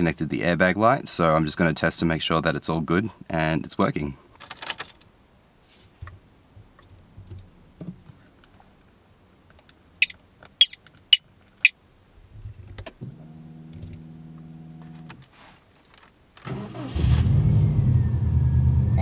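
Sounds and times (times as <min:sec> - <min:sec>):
steady hum: 0:12.4 - 0:15.3
car engine cranking and running: 0:16.4 - 0:19.0.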